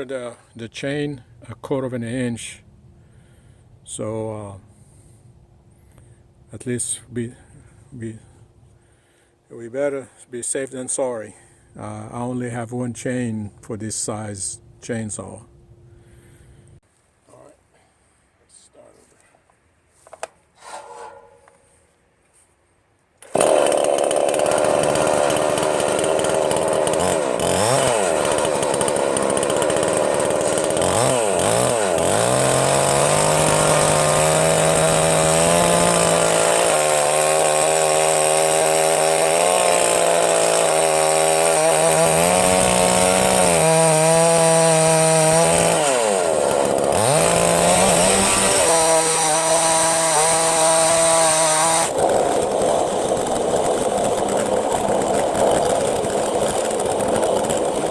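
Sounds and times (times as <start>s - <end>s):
chainsaw cutting log: 23.2s - 57.9s.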